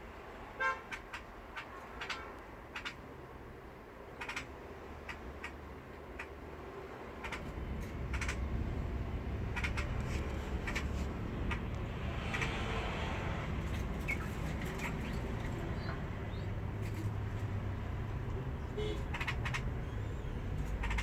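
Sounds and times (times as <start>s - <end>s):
bird clicking calls: 0.9s - 3.0s, 4.2s - 5.6s, 6.2s - 6.4s, 7.2s - 8.5s, 9.5s - 12.6s, 18.3s - 21.0s
low background rumble: 6.4s - 21.0s.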